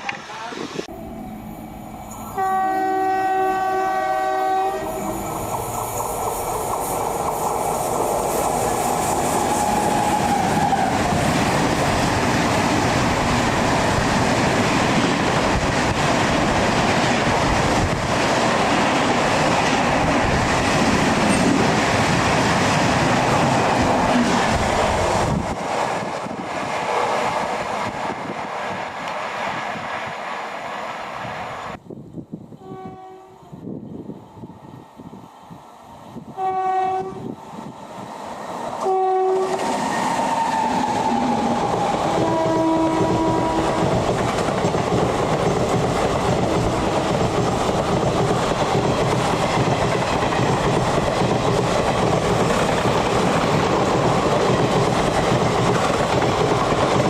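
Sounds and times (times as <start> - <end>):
train passing rushing and rumbling: 0.0 - 57.0
train horn blast: 2.3 - 5.2, 32.6 - 33.6, 36.3 - 37.3, 38.8 - 39.6, 42.2 - 43.8.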